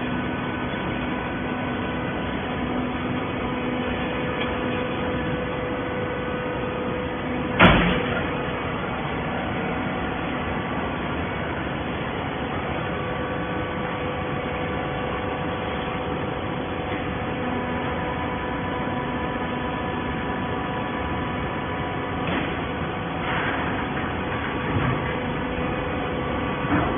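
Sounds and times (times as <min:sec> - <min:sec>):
paper baler humming: 0:00.0 - 0:26.9
loud metal clank: 0:07.6 - 0:08.3.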